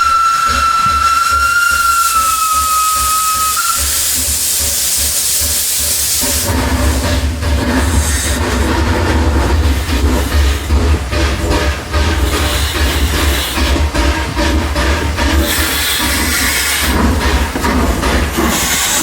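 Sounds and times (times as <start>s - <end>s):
steam locomotive whistle: 0.0s - 5.9s
steam hissing: 0.0s - 19.0s
train rumbling: 0.0s - 19.0s.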